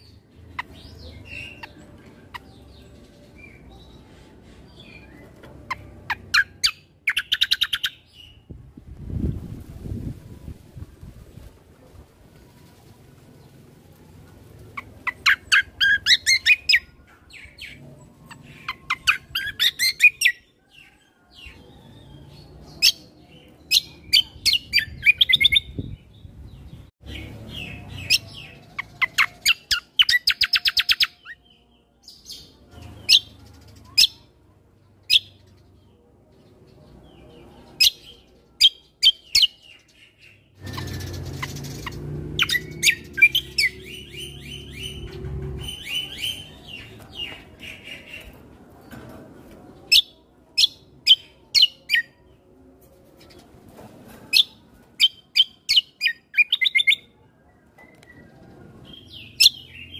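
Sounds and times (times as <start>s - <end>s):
bird chirping and whistling: 5.0s - 8.0s, 18.3s - 20.4s, 40.6s - 46.9s.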